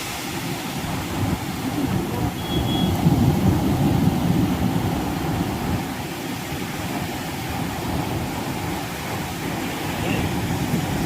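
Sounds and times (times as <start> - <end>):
sea surf: 0.0 - 11.0
wind buffeting microphone: 0.0 - 11.0.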